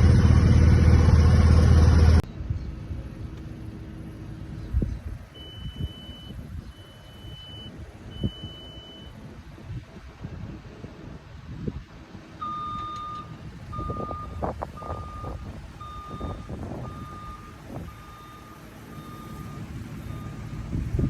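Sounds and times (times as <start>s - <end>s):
low rumble of machinery: 0.0s - 21.0s
back-up alarm beeping: 5.4s - 9.2s, 12.4s - 20.6s.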